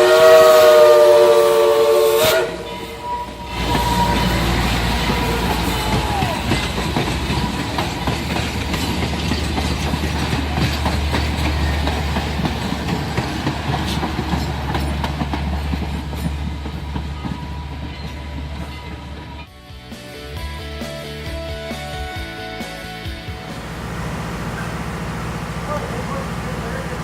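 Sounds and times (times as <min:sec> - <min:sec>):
train cars rolling on track: 0:00.0 - 0:19.9, 0:23.4 - 0:27.0
wheel clicks over rails: 0:03.7 - 0:17.1.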